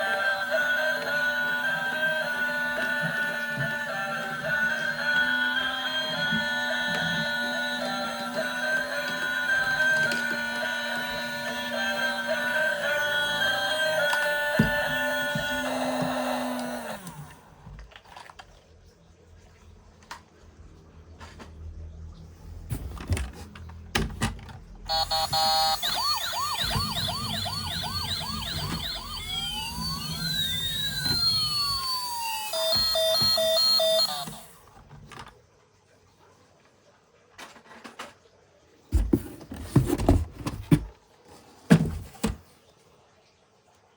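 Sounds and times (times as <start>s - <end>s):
toy vehicle electronic siren: 0.0s - 17.4s, 24.9s - 34.7s.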